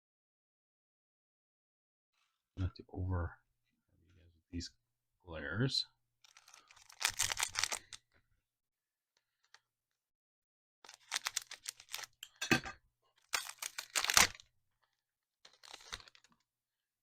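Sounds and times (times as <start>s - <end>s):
wrapper crinkling and tearing: 6.2s - 8.1s, 10.8s - 12.4s, 13.2s - 16.5s.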